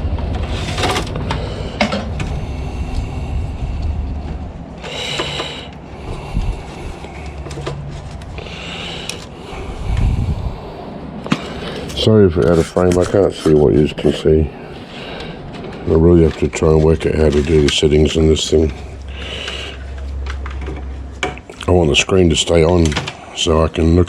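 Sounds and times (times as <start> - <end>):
low handling rumble: 0.0 - 22.4
wires clicking and scraping: 6.4 - 10.1, 11.2 - 14.3, 15.2 - 21.8.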